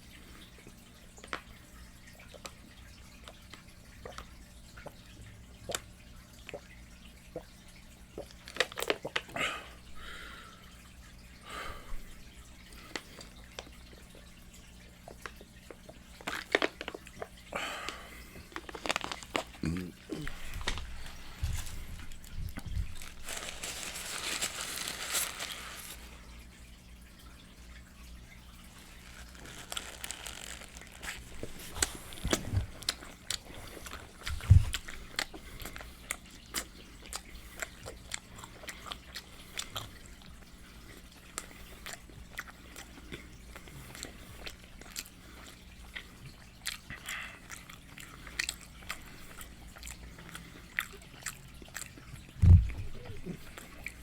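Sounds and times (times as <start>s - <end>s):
crunchy bites and chewing: 18.5s - 21.0s, 28.9s - 35.8s
low thumps: 52.4s - 53.2s.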